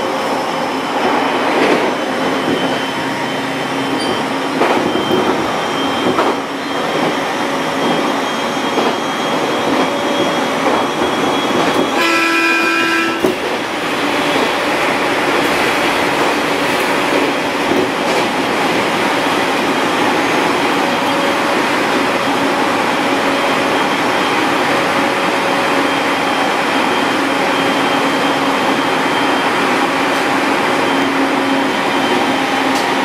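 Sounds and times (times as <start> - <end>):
train horn: 11.9 - 13.3.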